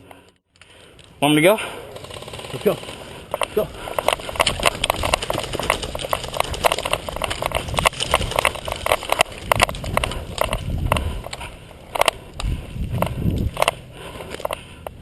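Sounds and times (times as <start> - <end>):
gear rattling: 1.3 - 15.0
footsteps on dirt and brush: 2.6 - 14.9.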